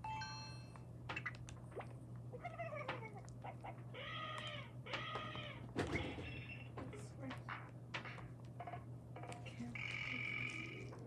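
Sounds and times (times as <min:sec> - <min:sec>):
low mains hum: 0:00.0 - 0:11.0
cat meowing: 0:04.0 - 0:05.6.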